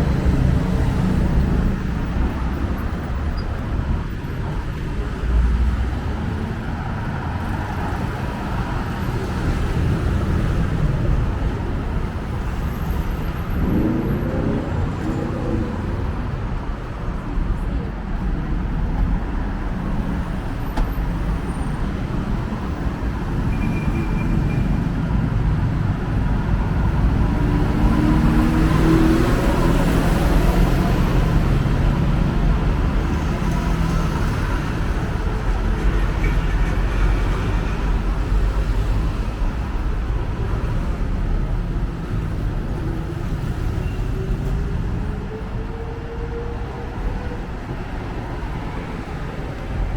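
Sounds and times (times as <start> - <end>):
road traffic rumble: 0.0 - 49.9
engine passing close by: 12.1 - 16.8.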